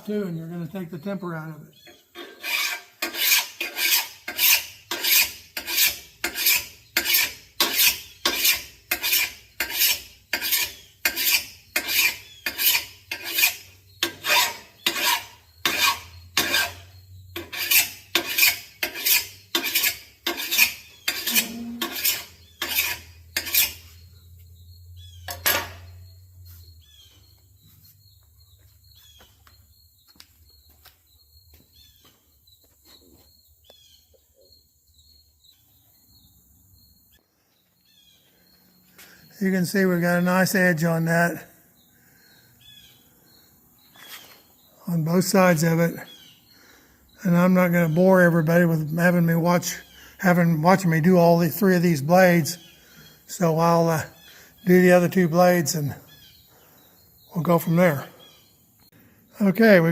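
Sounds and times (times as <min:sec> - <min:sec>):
mower blade being sharpened: 0:02.2 - 0:24.0.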